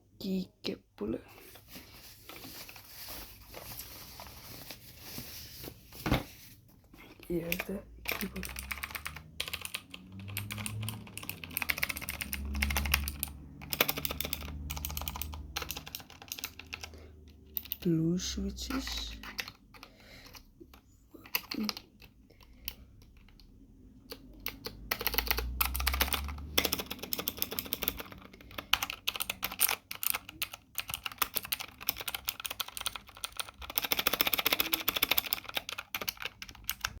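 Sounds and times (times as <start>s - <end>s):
clicky mechanical keyboard typing: 7.2s - 17.9s, 19.2s - 37.0s.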